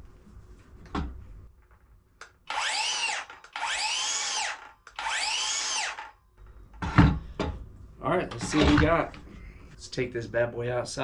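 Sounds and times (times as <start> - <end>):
circular saw whining: 2.5 - 6.2.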